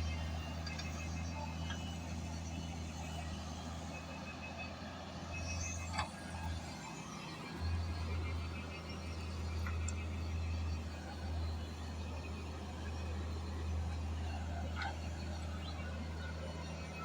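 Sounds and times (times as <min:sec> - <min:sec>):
diesel engine droning: 0:00.0 - 0:17.0.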